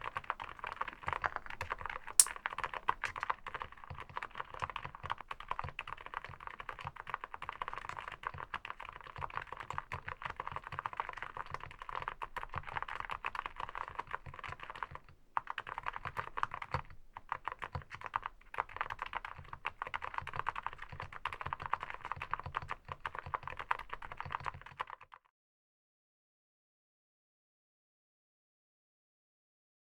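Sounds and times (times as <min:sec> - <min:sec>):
mechanical keyboard typing: 0:02.9 - 0:25.1.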